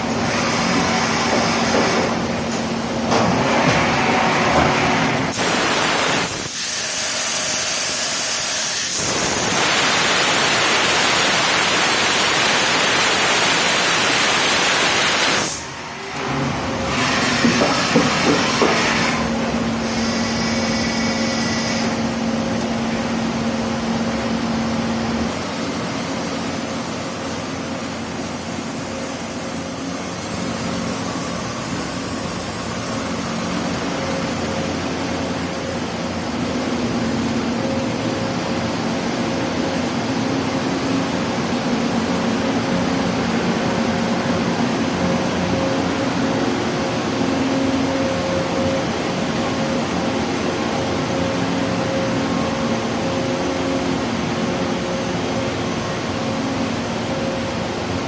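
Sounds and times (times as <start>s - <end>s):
machine hum with whine: 0.0s - 7.2s, 8.0s - 58.0s.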